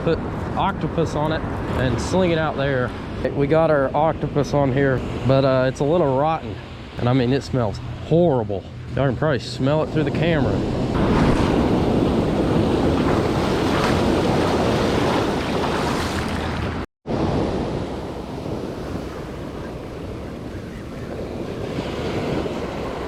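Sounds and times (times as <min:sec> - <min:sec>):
ocean surf breaking: 0:00.0 - 0:23.0
wind rumbling on microphone: 0:00.0 - 0:23.0.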